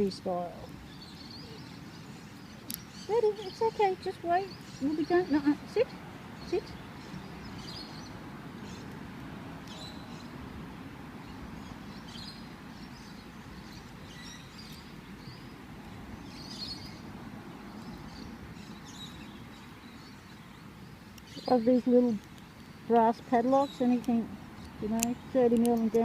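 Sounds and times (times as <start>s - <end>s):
faint high bird chirps: 0.0s - 5.6s.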